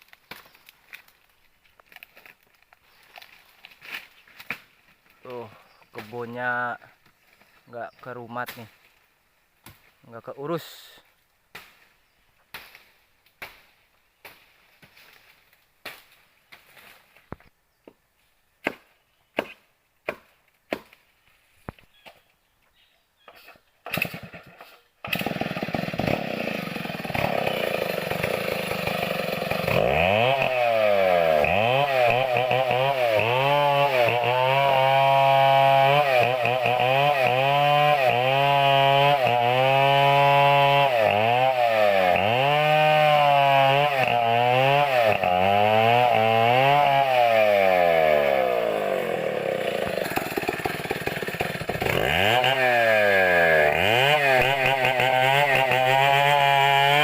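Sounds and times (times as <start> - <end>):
chainsaw revving: 23.9 - 57.0.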